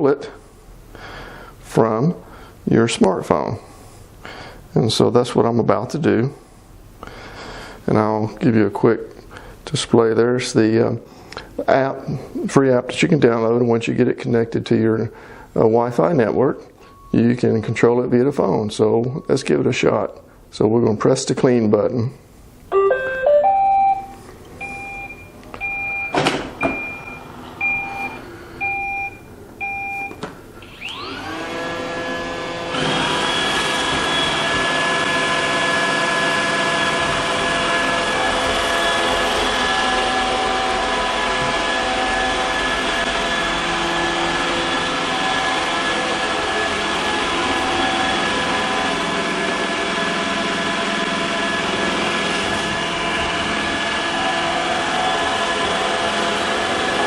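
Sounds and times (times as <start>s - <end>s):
short beeps: 22.7s - 30.2s
robot vacuum motor whine and hum: 30.6s - 57.0s.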